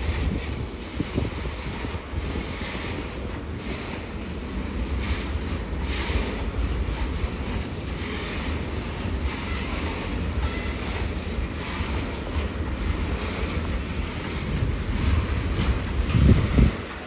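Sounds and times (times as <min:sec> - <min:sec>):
train wheels rumbling on rail: 0:00.0 - 0:17.0
faint wheel squeals: 0:06.4 - 0:06.9.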